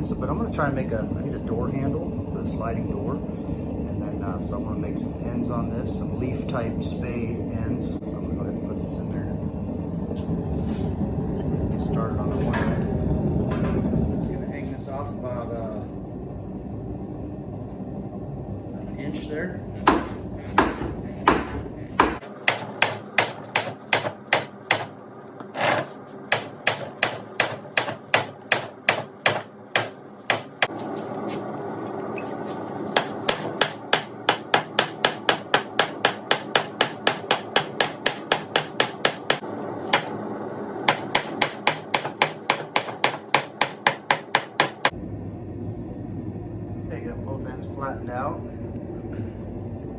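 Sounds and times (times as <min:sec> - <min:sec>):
hammer striking metal on anvil: 0:19.9 - 0:24.9, 0:33.0 - 0:40.2, 0:40.9 - 0:44.9.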